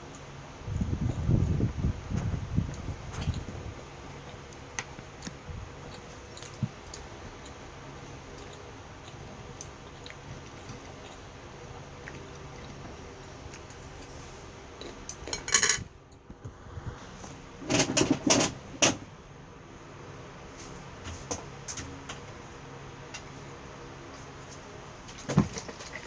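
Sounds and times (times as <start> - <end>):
low background hum: 0.0 - 26.0
utensils clattering against dishes: 15.2 - 15.9.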